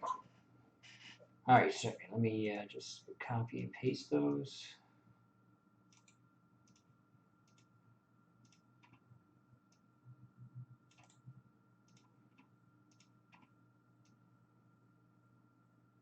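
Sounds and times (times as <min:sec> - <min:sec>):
low electrical hum: 0:00.0 - 0:16.0
computer mouse clicking: 0:05.9 - 0:07.7, 0:08.4 - 0:09.0, 0:10.9 - 0:14.2.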